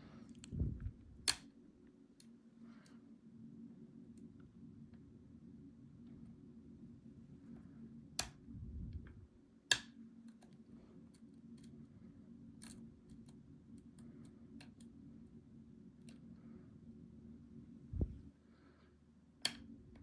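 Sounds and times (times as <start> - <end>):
light ticks of lock pins: 9.7 - 11.8, 12.6 - 15.0
lock picks clicking in lock: 12.6 - 13.4.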